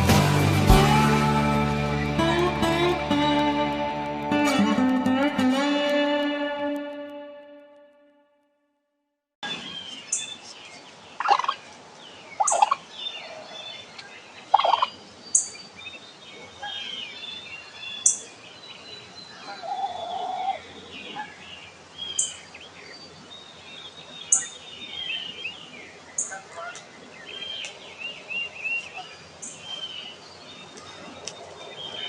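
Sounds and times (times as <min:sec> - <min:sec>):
songbirds calling: 0:09.4 - 0:32.0
wild turkey gobbling: 0:11.2 - 0:11.6, 0:12.4 - 0:12.8, 0:14.5 - 0:14.9, 0:19.4 - 0:20.6.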